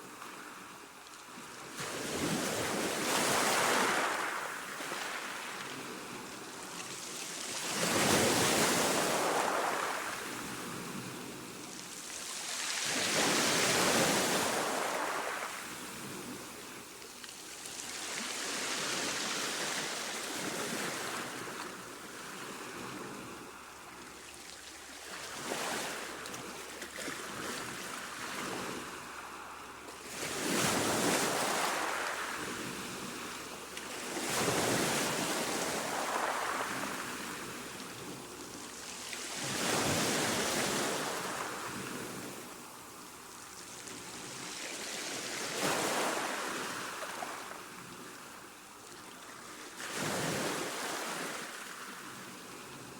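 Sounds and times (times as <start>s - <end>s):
sea waves washing in: 2.2s - 17.0s, 27.1s - 43.0s.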